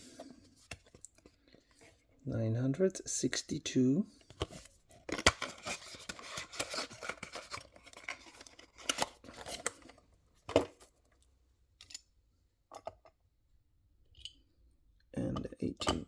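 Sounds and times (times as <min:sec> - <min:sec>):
packaging rustling and scraping: 0:04.3 - 0:10.0.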